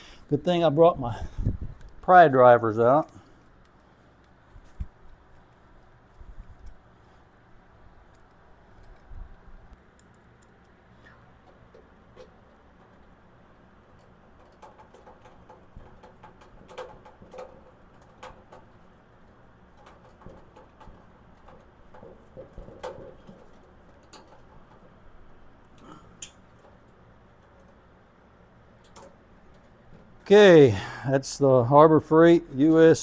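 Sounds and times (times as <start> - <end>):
hand tools clicking and tapping: 13.8 - 25.0.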